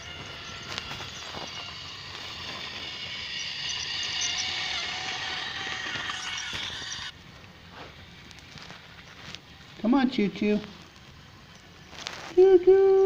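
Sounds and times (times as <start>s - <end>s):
toy train motor whirring: 0.0s - 7.2s.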